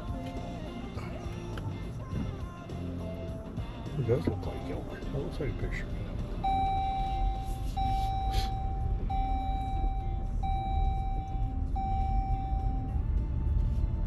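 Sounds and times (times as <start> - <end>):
vehicle rumbling on rough road: 0.0 - 14.0
car warning chime beeps: 6.4 - 13.0.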